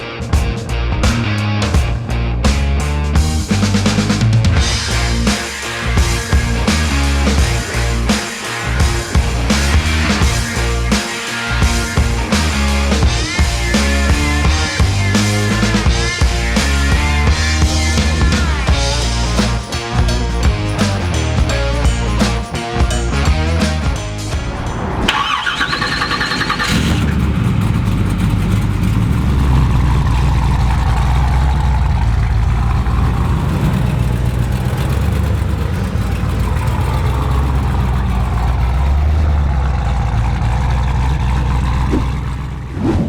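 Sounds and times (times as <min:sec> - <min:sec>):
music: 0:00.0 - 0:26.8
car engine rumbling: 0:03.2 - 0:22.4, 0:24.1 - 0:43.0
starter motor whine: 0:24.6 - 0:42.7.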